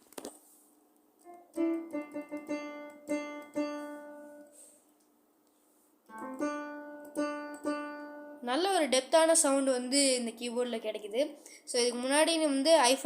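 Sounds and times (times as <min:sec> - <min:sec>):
keyboard playing notes: 0:01.2 - 0:04.6, 0:06.1 - 0:08.4.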